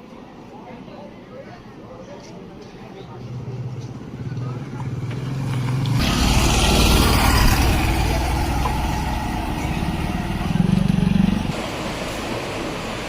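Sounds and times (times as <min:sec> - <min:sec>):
road noise: 0:00.0 - 0:13.0
vehicle passing: 0:03.3 - 0:13.0
low engine drone: 0:06.0 - 0:13.0.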